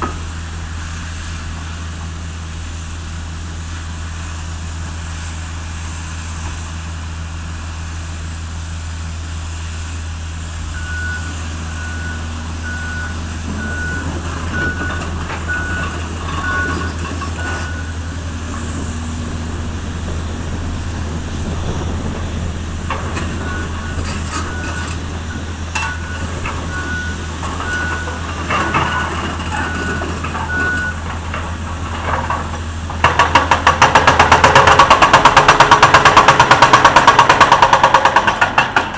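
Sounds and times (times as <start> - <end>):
diesel engine running: 0.0 - 38.9
reversing alarm beeping: 10.7 - 18.3, 23.3 - 31.0
hydraulic breaker hammering: 33.0 - 38.9.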